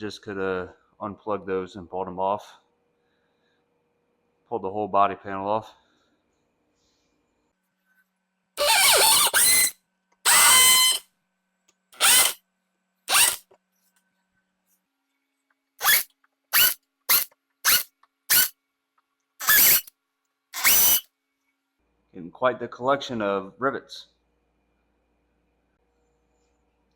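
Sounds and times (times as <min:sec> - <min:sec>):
power drill drilling out rivets: 0:08.6 - 0:09.7, 0:10.3 - 0:11.0, 0:12.0 - 0:12.4, 0:13.1 - 0:13.5, 0:15.8 - 0:18.5, 0:19.4 - 0:19.9, 0:20.6 - 0:21.0.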